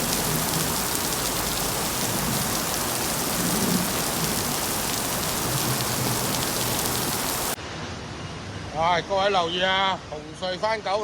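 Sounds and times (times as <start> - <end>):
heavy rain pouring: 0.0 - 7.6.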